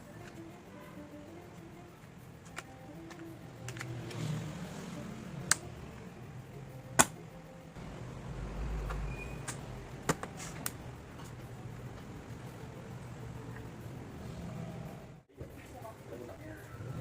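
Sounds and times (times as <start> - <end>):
computer parts clicking: 2.4 - 4.2.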